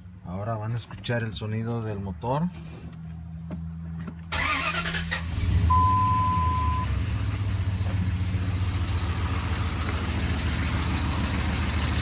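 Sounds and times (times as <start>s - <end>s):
electronic beep: 5.7s - 6.9s
engine running with knocking: 7.2s - 12.0s.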